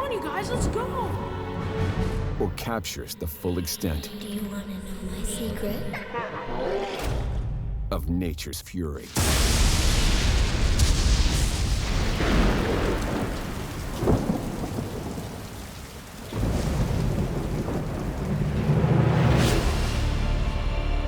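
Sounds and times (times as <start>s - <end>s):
sharp thunder crack: 9.1s - 20.4s
heavy rain: 9.1s - 21.0s
deep rolling thunder: 9.2s - 20.6s.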